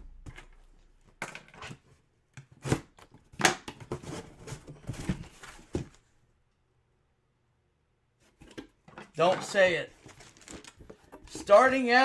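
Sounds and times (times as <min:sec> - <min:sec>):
packaging tearing and crinkling: 0:10.0 - 0:10.8.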